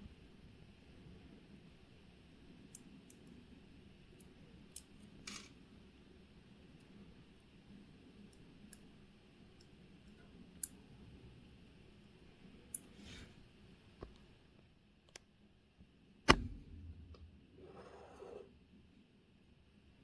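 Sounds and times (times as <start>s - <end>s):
small tools clicking on watch parts: 4.1s - 5.6s
brief scrape: 16.3s - 18.5s.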